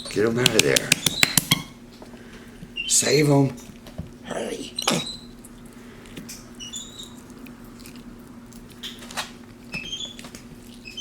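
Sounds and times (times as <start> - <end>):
steady low hum: 0.0 - 10.9
monkey chirping squeaks: 0.9 - 1.8, 4.7 - 5.3, 6.6 - 7.2, 9.8 - 10.2
slime squishing: 3.5 - 11.0.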